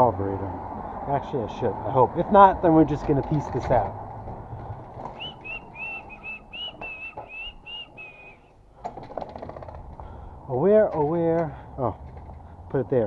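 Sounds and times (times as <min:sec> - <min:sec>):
person whistling: 0:05.2 - 0:08.5.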